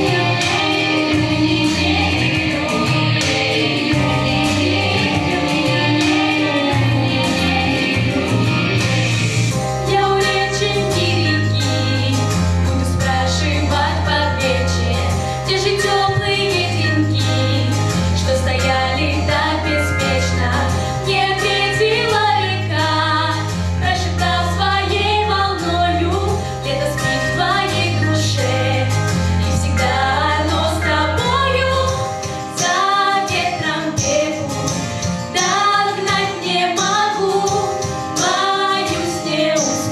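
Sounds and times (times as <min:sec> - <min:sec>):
band backing with bass line: 0:00.0 - 0:39.9
female voices singing pop song: 0:00.0 - 0:39.9.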